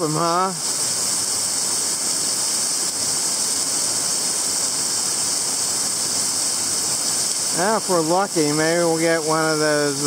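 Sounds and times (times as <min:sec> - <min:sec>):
waterfall rushing: 0:00.0 - 0:10.0.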